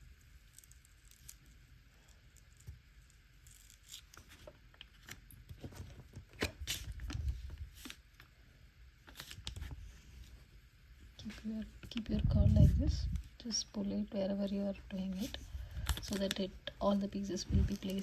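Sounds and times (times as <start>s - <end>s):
paper peeling off a sticker: 2.4s - 5.8s, 9.0s - 10.0s.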